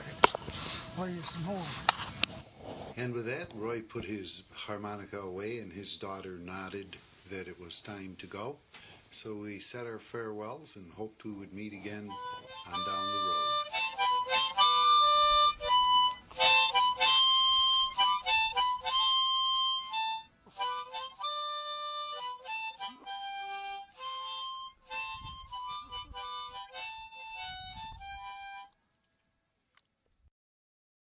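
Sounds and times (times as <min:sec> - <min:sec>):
harmonica playing old-time tune: 0:11.8 - 0:28.8.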